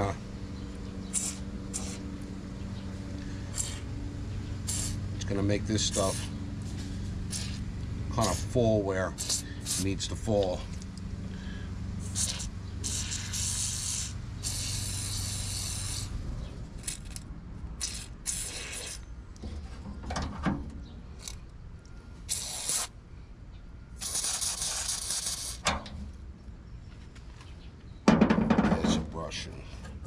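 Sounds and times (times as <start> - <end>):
aerosol can spraying hisses: 1.2 - 2.0, 4.7 - 5.0, 5.9 - 6.3, 7.3 - 7.6, 12.0 - 16.2, 22.3 - 22.9, 24.0 - 25.6.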